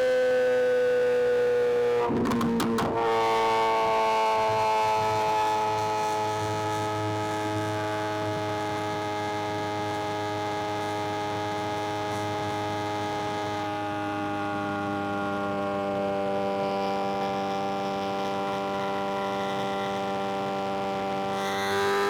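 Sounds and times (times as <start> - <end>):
motorcycle engine humming: 2.1 - 3.1.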